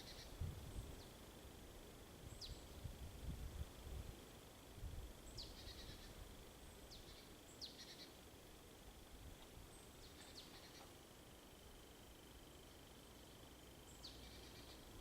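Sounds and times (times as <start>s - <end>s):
bird calls with chattering trill: 5.3s - 6.2s, 9.8s - 10.9s, 13.9s - 14.9s.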